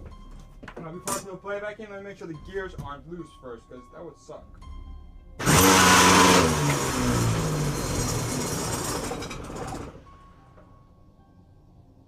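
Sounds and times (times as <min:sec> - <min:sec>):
planer motor spinning down: 0:05.4 - 0:10.0.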